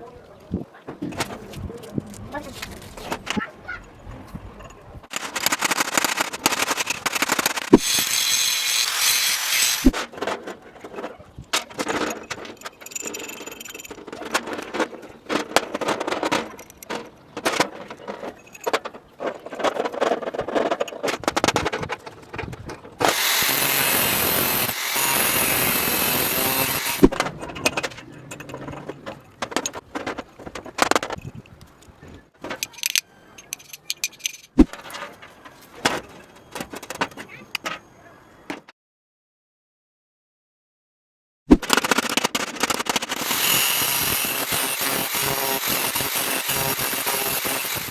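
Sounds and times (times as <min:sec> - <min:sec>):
metal tools clinking and scraping: 0:02.1 - 0:10.0, 0:10.8 - 0:21.2, 0:26.5 - 0:37.8.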